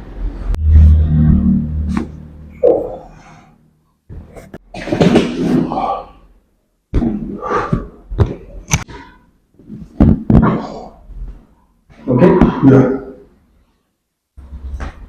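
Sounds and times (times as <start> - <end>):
thumps: 6.9 - 12.0.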